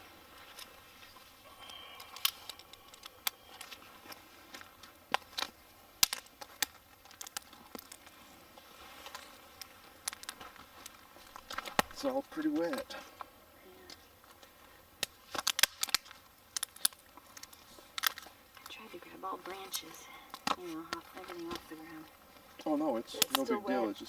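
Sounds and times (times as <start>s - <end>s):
small branches snapping: 1.6s - 18.8s, 19.4s - 23.6s.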